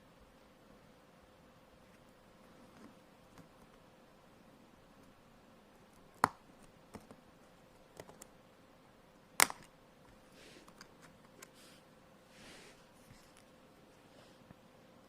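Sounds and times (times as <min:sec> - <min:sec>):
plastic keycaps snapping off: 0:09.4 - 0:09.7
soft scrape: 0:11.5 - 0:13.4.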